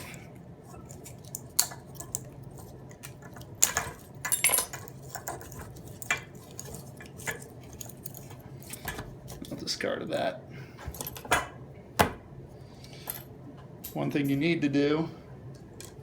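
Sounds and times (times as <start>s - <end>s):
metal parts clicking and clinking: 2.9s - 9.1s, 10.8s - 11.5s.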